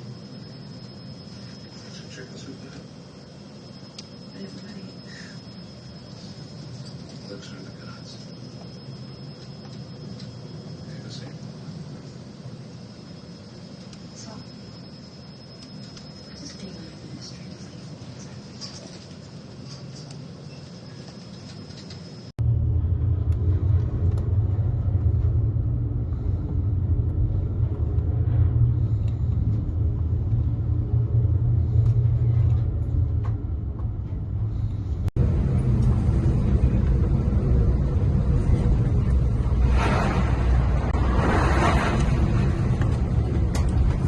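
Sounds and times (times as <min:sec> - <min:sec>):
boat engine rumbling: 0:22.5 - 0:44.0
rushing burst of noise: 0:35.2 - 0:44.0.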